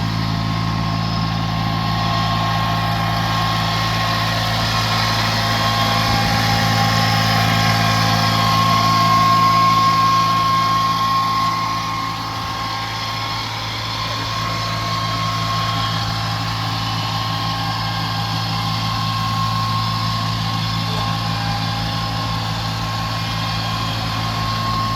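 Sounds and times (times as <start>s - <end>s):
diesel engine idling: 0.0s - 24.9s
high whine: 0.0s - 24.9s.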